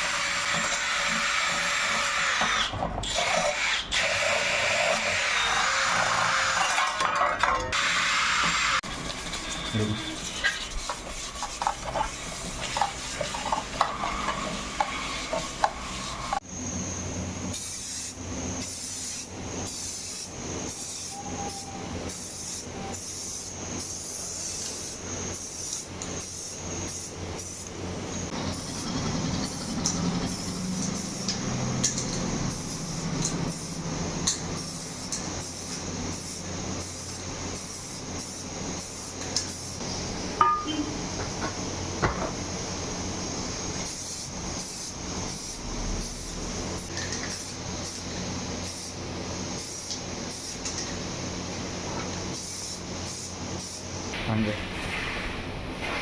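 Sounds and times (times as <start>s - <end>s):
hand rubbing metal parts: 8.9s - 16.4s.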